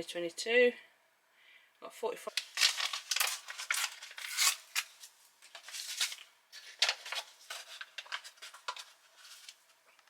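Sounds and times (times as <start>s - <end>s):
foil sachet crinkling: 2.3s - 9.6s.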